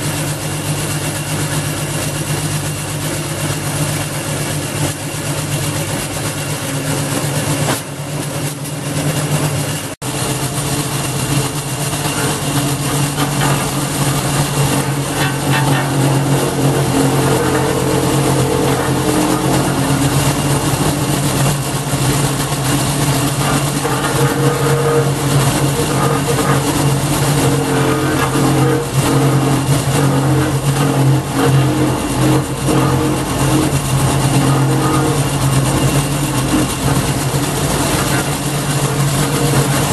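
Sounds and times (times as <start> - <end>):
wood chipper engine running: 0.0 - 39.9
rough crackly noise: 9.8 - 39.9.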